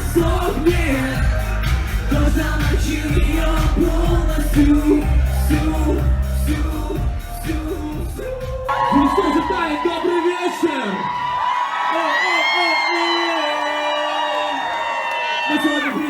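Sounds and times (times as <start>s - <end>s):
pounding bass beat: 0.0s - 10.2s
pop dance music: 0.0s - 16.0s.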